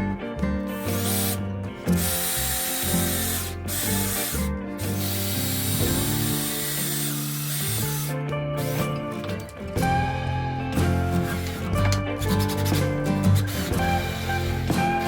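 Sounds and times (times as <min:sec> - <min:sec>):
background music: 0:00.0 - 0:15.0
power drill running: 0:00.8 - 0:10.0, 0:10.8 - 0:15.0.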